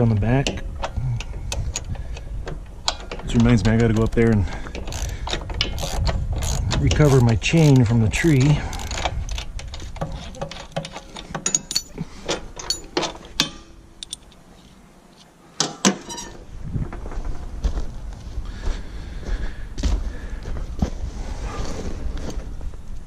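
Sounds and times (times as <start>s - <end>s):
steady low rumble: 0.0s - 15.1s, 16.4s - 23.0s
sharp clicks and knocks: 0.0s - 16.3s.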